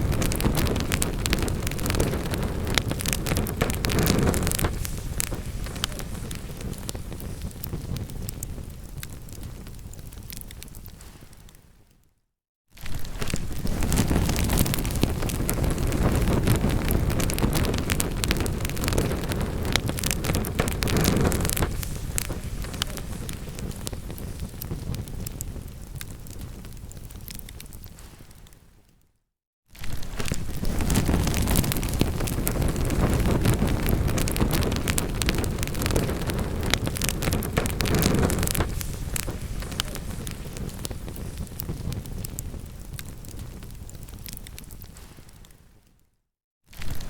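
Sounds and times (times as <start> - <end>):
low rumble of burning: 0.0 - 11.6, 12.8 - 28.8, 29.8 - 45.6
wood fire crackling and popping: 0.0 - 11.6, 12.8 - 29.0, 29.8 - 45.9, 46.7 - 47.0.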